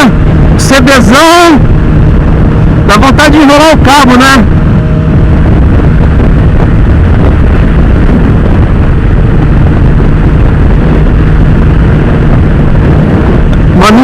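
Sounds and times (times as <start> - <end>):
wind rumble on microphone: 0.0 - 14.0
motorcycle engine running: 3.9 - 14.0.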